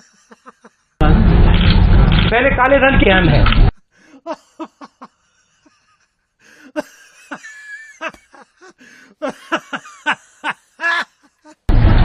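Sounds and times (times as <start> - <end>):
person laughing: 0.0 - 1.0, 4.1 - 11.7.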